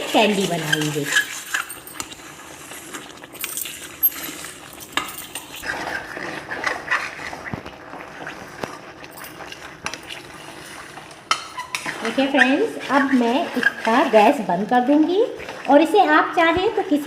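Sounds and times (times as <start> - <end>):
light sizzle: 0.0 - 17.0
spoon scraping and knocking a pan: 3.0 - 14.3.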